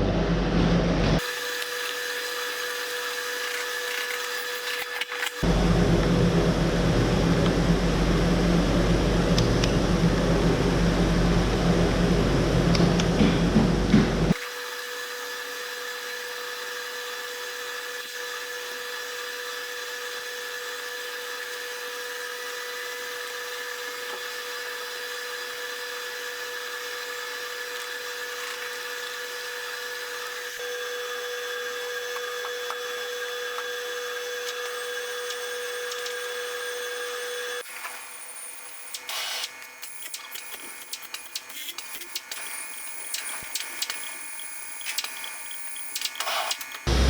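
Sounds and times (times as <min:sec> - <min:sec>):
steady machine whine: 0:00.0 - 0:14.4, 0:29.1 - 0:40.8, 0:42.2 - 0:47.0.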